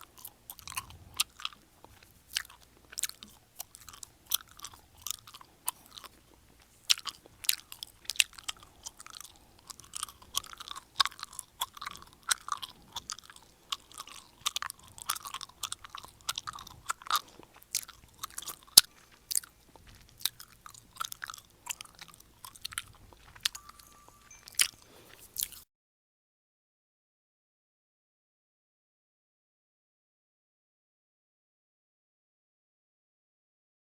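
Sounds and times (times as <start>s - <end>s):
person chewing gum: 0.0s - 25.7s.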